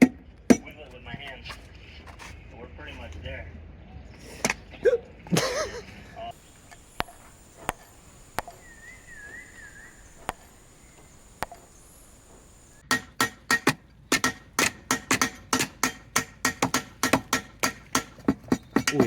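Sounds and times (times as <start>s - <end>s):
sharp knocks on engine parts: 0.0s - 1.3s, 11.4s - 19.0s.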